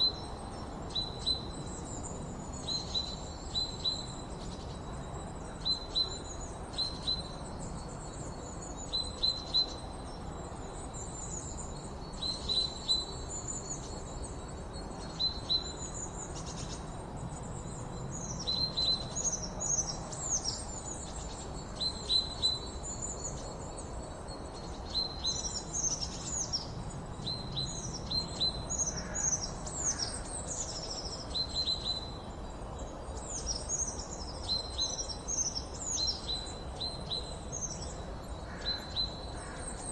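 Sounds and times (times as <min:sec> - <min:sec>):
small birds chirping and singing: 0:00.0 - 0:39.9
steady background hiss: 0:00.0 - 0:39.9.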